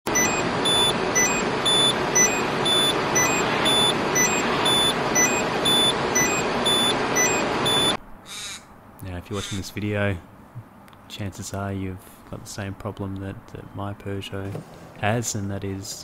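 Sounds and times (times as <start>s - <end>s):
two-note warning chime beeping: 0.1s - 8.0s.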